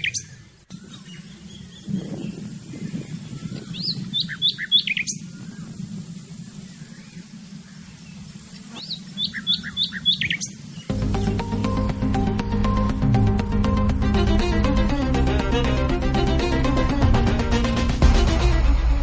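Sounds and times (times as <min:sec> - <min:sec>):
songbird singing: 0:00.0 - 0:16.9
steady low rumble: 0:10.5 - 0:19.0
music: 0:10.9 - 0:19.0.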